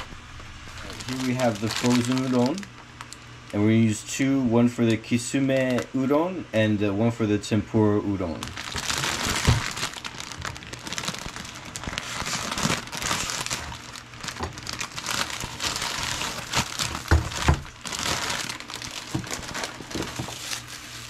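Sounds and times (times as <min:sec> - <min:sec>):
plastic wrapping crinkling: 0:00.6 - 0:03.3, 0:05.6 - 0:05.9, 0:08.3 - 0:21.0.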